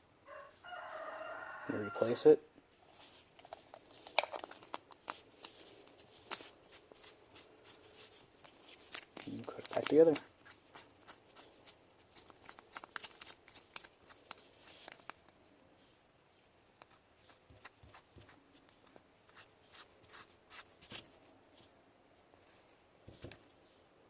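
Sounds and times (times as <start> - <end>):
plastic housing clicks: 3.4 - 5.6, 8.4 - 10.3, 12.1 - 15.3.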